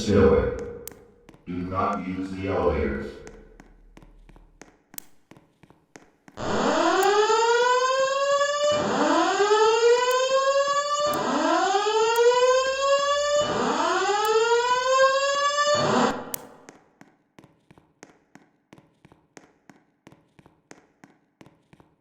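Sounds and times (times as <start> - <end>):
fire alarm whoop tone: 6.4 - 16.4.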